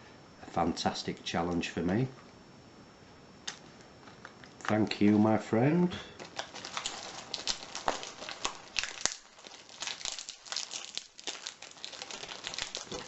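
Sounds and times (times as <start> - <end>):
packaging crinkling: 6.2 - 13.0.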